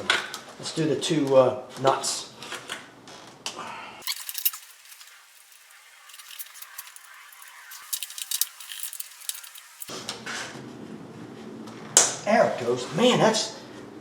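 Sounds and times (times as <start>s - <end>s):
metal tools clinking: 4.0s - 9.9s.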